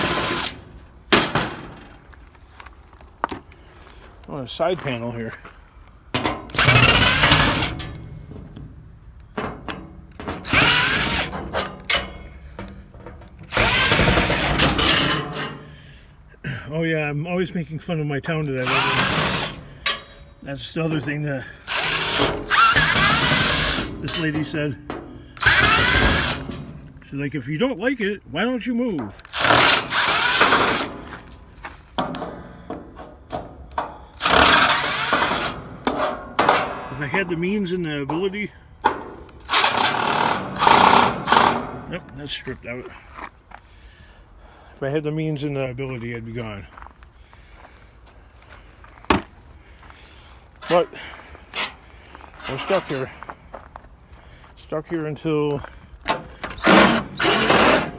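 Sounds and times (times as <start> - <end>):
power drill motor whine: 0.0 - 0.6, 6.5 - 8.3, 10.2 - 12.0, 13.4 - 15.8, 18.6 - 20.2, 21.4 - 24.4, 25.4 - 26.8, 29.2 - 31.4, 34.1 - 35.6, 39.4 - 41.7, 56.3 - 57.9
clicks and knocks: 6.1 - 15.8, 29.0 - 37.3.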